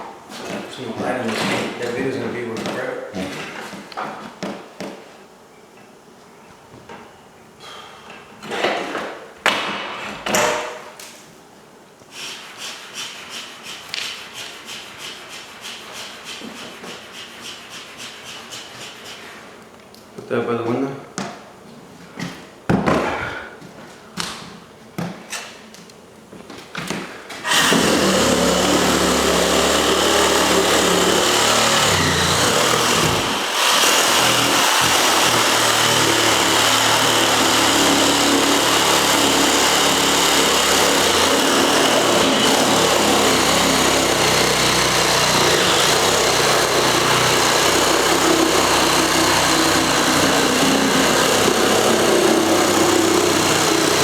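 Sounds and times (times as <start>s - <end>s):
small electric motor running: 27.5s - 54.0s.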